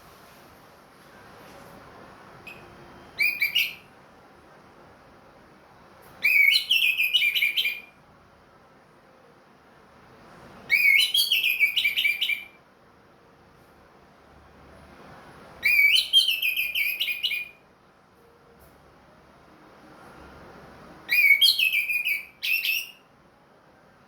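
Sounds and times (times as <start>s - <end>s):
thrush singing whistled phrases: 3.0s - 3.9s, 21.1s - 23.0s.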